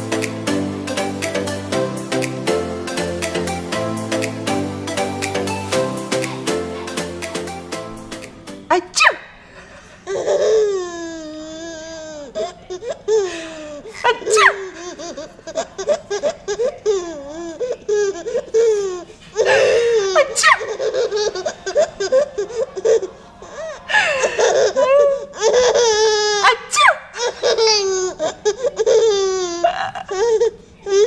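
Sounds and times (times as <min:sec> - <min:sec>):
baby laughing: 0:10.1 - 0:31.0.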